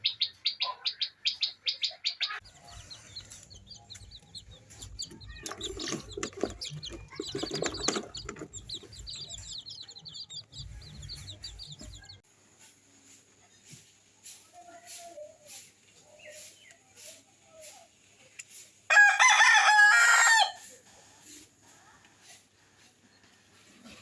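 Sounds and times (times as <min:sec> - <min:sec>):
small birds chirping: 0:00.0 - 0:12.2, 0:14.5 - 0:18.6.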